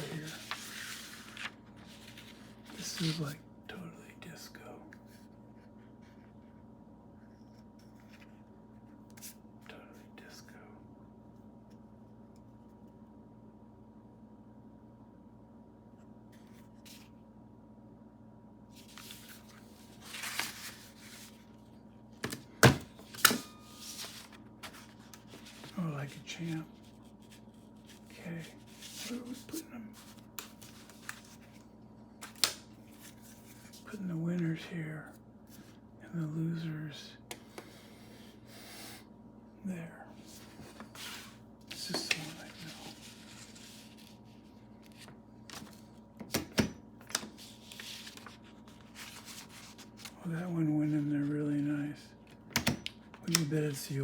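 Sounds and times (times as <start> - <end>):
paper rustling: 0.0 - 3.4, 18.7 - 21.7, 22.9 - 33.9, 40.2 - 46.0, 47.0 - 50.2
soft handling sounds: 0.0 - 3.4, 4.9 - 10.0, 18.7 - 21.8, 22.9 - 34.4, 40.1 - 46.1, 47.0 - 50.3.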